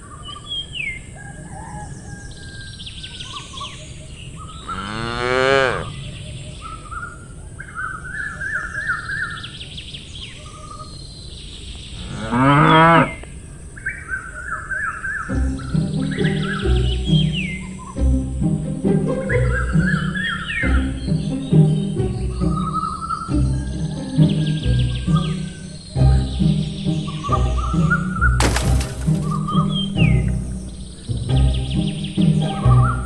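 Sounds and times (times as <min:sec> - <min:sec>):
cows mooing: 0:04.7 - 0:05.9.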